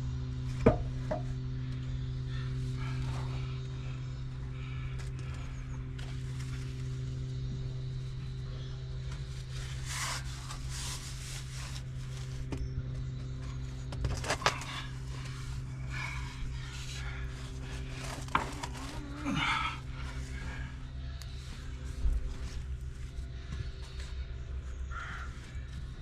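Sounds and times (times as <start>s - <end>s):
low hum: 0.0s - 26.0s
scraping and rubbing: 9.2s - 12.5s, 13.5s - 20.7s.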